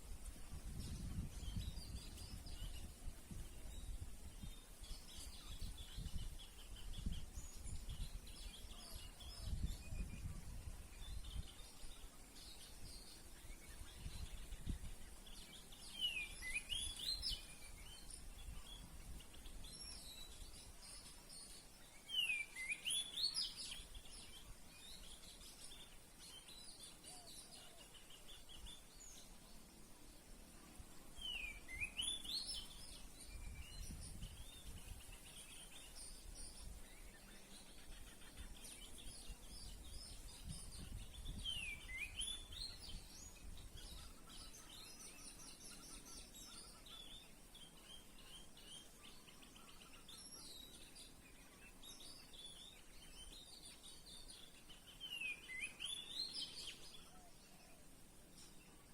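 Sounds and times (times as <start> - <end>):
faint high hiss: 0.0 - 58.9
songbirds chirping and whistling: 0.0 - 58.9
sweeping bird call: 30.8 - 58.9.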